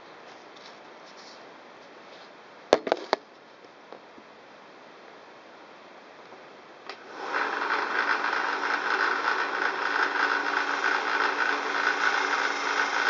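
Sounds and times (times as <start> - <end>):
belt sander running: 7.0 - 13.0
vibration rattle: 7.1 - 13.0.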